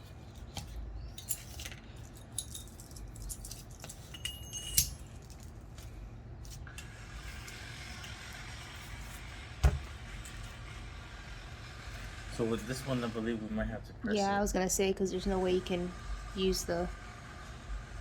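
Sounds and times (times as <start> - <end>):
metal tools clinking: 1.1 - 5.6
ringing metal clink: 2.4 - 5.4
heavy thump: 9.6 - 9.9.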